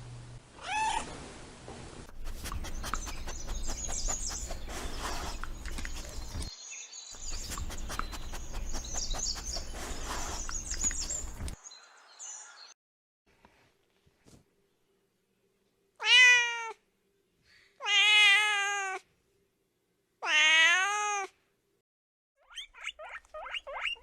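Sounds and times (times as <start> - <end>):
birds chirping: 2.1 - 12.8.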